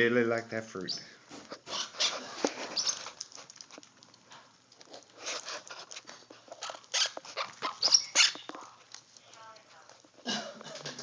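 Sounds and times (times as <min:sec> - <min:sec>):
parrots pecking at fruit: 0:01.3 - 0:11.0
baby parrots scrabbling: 0:01.6 - 0:04.1, 0:04.8 - 0:08.9.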